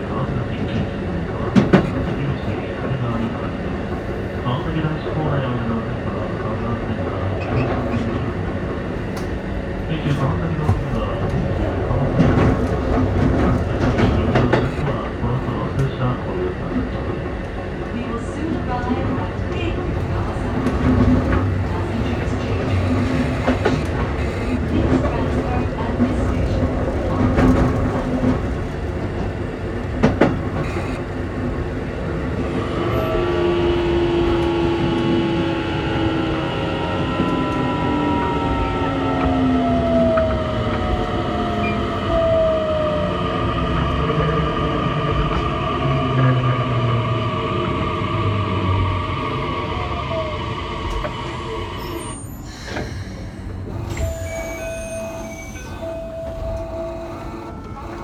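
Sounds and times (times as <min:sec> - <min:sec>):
train interior rumble: 0:00.0 - 0:58.0
electrical tones: 0:30.4 - 0:31.4, 0:52.7 - 0:58.0.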